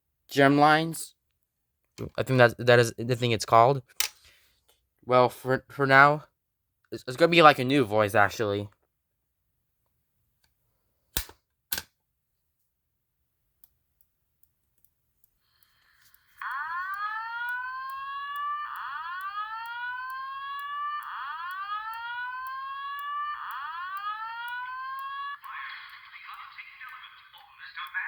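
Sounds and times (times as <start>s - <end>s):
faint ticks: 14.4s - 28.0s
whooping fire alarm tone: 16.4s - 27.8s.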